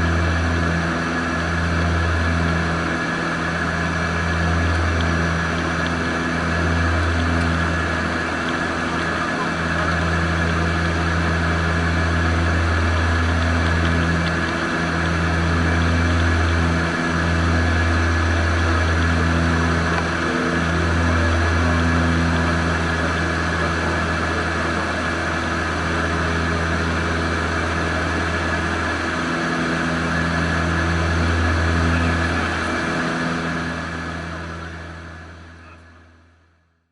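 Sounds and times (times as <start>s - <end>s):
turboprop engine drone: 0.0s - 36.9s.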